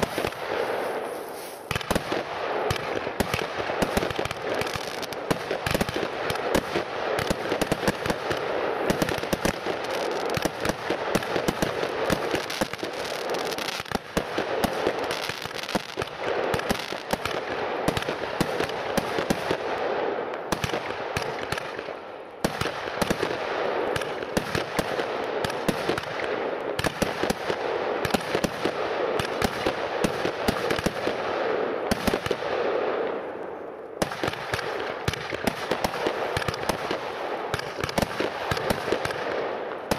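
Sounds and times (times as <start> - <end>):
firework crackling: 0.0 - 19.8, 34.0 - 39.9
firework cracks and bangs: 0.0 - 33.4, 34.0 - 39.9.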